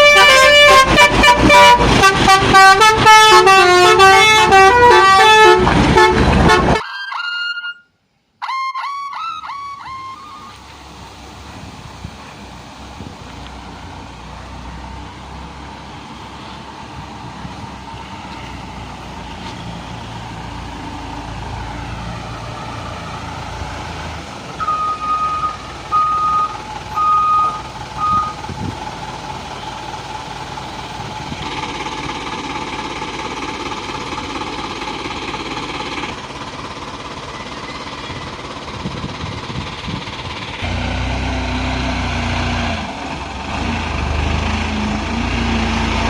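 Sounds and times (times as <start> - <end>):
diesel truck engine running: 0.0 - 6.8, 9.5 - 46.0
reversing alarm beeping: 24.6 - 28.4.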